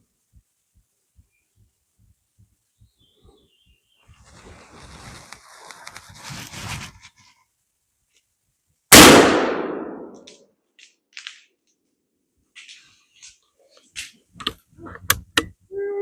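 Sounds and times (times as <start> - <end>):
soft rustling: 4.0 - 8.3
loud gunshot: 8.9 - 10.2.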